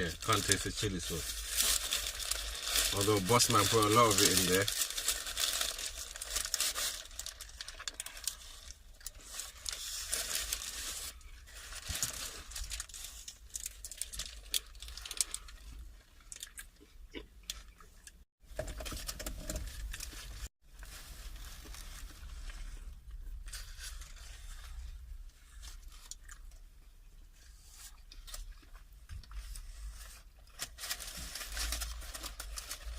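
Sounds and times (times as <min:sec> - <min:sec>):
paper wrapper crinkling: 0:00.0 - 0:16.5, 0:29.4 - 0:32.9.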